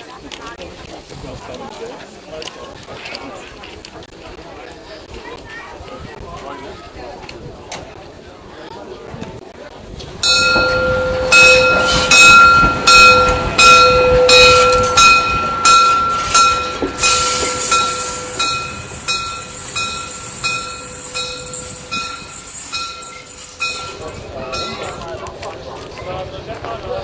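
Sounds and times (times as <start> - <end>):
train wheels clacking: 10.1 - 25.6
steady high tone: 10.2 - 25.0.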